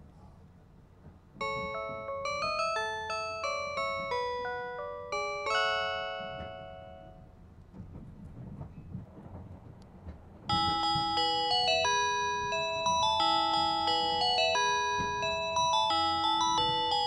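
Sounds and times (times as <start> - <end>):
music-box announcement chime: 1.4 - 7.2, 10.5 - 17.0.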